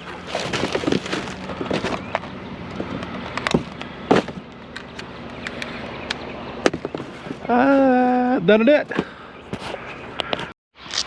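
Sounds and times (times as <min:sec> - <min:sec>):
junk knocking and clattering: 0:00.2 - 0:05.1, 0:06.6 - 0:07.4.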